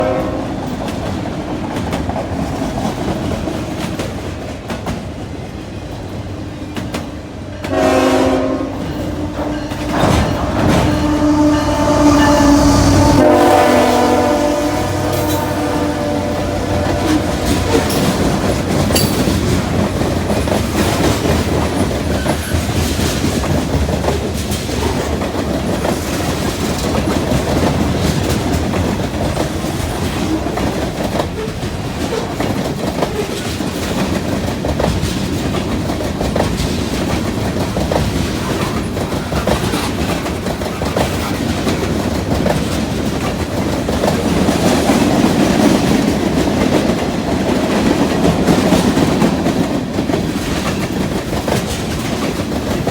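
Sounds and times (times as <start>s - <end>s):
freight train rumbling: 0.0s - 52.9s
wheels clicking over rail joints: 14.9s - 52.9s.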